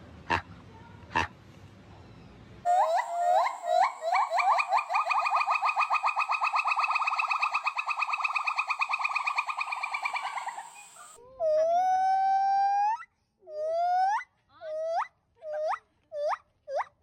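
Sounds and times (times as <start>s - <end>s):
monkey chattering trill: 2.7s - 11.7s
monkey whistle-like call: 2.7s - 13.0s.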